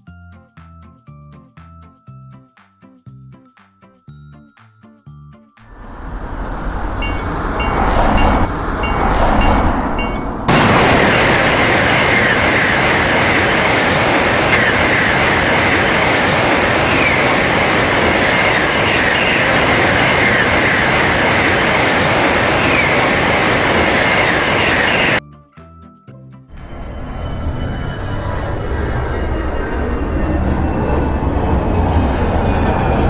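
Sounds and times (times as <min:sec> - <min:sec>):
crossing bell ringing: 0:05.7 - 0:25.2, 0:26.5 - 0:33.0
train wheels rumbling on rails: 0:05.7 - 0:25.2, 0:26.5 - 0:33.0.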